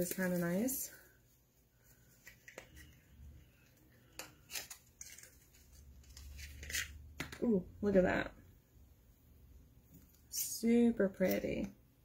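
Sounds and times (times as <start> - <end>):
package handling noises: 3.6 - 7.3.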